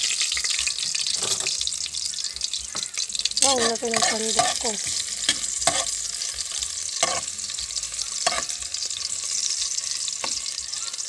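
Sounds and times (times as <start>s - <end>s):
garlic sizzling in hot oil: 0.0s - 11.0s
ladle knocking and scraping pan: 0.9s - 1.6s, 3.5s - 6.0s.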